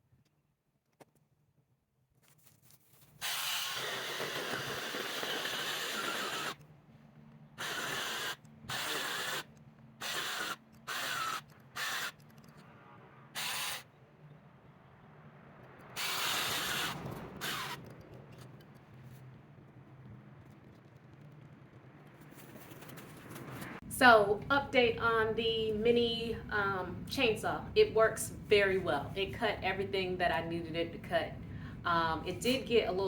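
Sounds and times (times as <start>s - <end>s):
mini chainsaw running in bursts: 3.2s - 6.6s, 7.6s - 12.2s.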